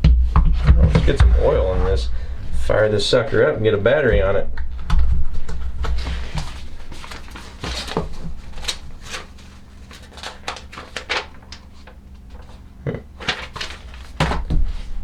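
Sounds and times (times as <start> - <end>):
low steady hum: 0.0 - 15.0
packaging and papers rustling: 4.7 - 15.0.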